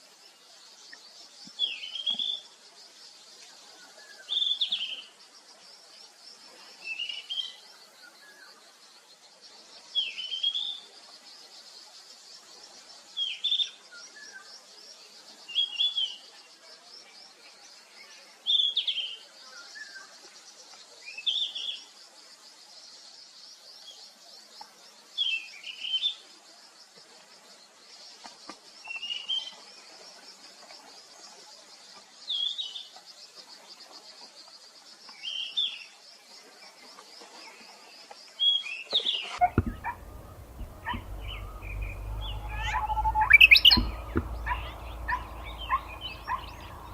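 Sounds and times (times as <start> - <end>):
bird call: 39.3 - 46.9
bird chirps: 39.4 - 46.9
insects buzzing: 39.4 - 46.9
low hum: 39.4 - 46.9.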